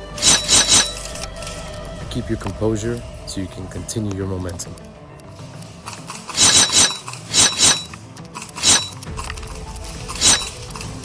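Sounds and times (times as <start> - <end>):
airsoft gun firing bursts: 5.9 - 11.0.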